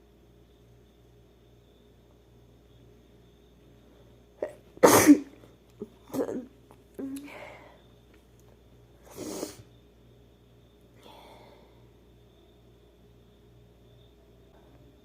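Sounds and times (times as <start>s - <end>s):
woman sneezing: 4.8s - 5.3s
sharp intake of breath: 9.0s - 9.7s.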